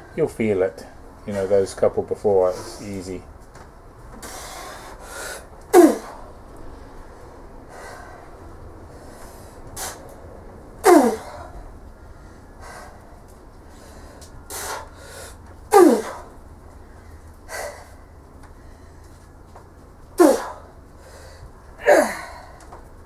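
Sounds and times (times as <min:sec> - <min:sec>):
woman grunting with strain: 0:10.8 - 0:11.4, 0:15.7 - 0:16.2, 0:20.2 - 0:20.6, 0:21.8 - 0:22.6.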